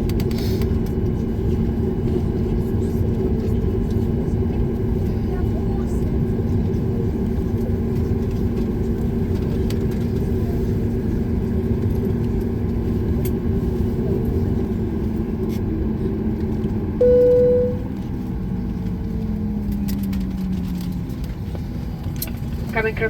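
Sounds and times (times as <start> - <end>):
airplane cabin rumble and hum: 0.0 - 23.0
single-tone cabin chime: 17.0 - 18.0.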